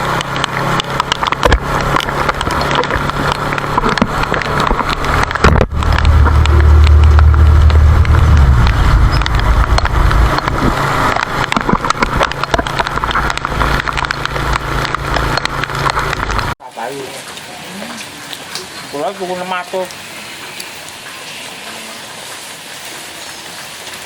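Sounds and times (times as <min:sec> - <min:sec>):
loud deep rumble: 0:00.0 - 0:16.6
heavy rain pattering on a tarp: 0:00.0 - 0:24.0.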